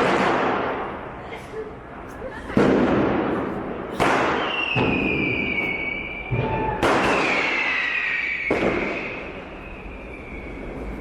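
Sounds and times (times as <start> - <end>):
firecracker bangs: 0.0 - 1.1, 2.6 - 9.5
high whistle dropping in pitch: 4.6 - 11.0.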